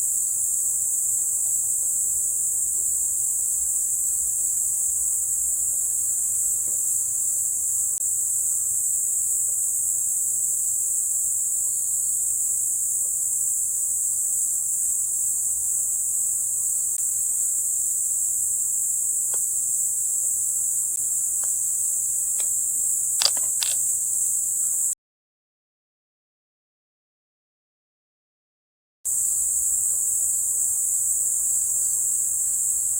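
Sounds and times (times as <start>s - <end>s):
crickets chirping: 0.0s - 24.9s, 29.1s - 32.9s
short clicks: 23.2s - 23.8s.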